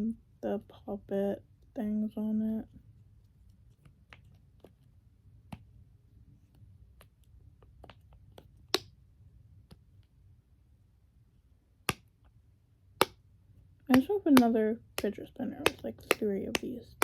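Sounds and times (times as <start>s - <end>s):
plastic fidget toys clicking: 13.9s - 17.0s.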